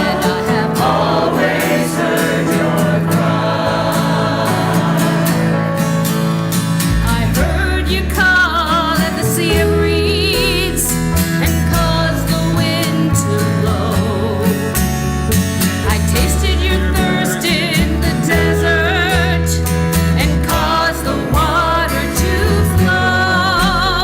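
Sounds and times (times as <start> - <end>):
instrumental accompaniment with bass: 0.0 - 24.0
person singing with vibrato: 6.9 - 14.6, 15.8 - 19.6, 20.2 - 24.0.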